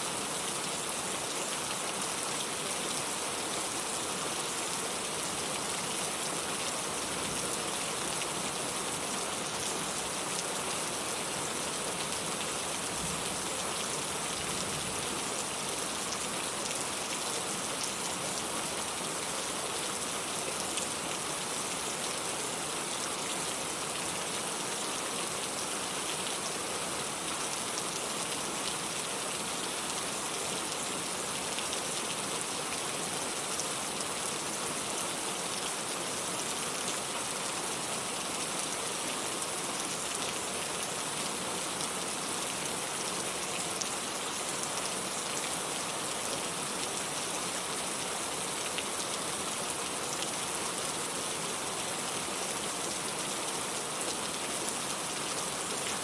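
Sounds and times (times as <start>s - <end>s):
steady rain hiss: 0.0s - 56.0s.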